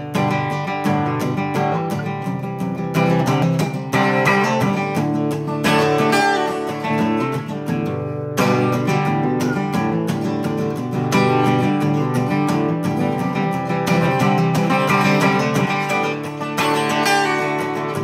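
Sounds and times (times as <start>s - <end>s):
acoustic guitar strumming chords: 0.0s - 18.0s.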